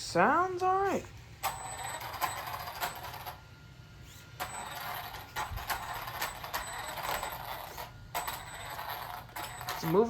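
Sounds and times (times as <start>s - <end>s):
rc truck electric motor whine: 4.0s - 10.0s.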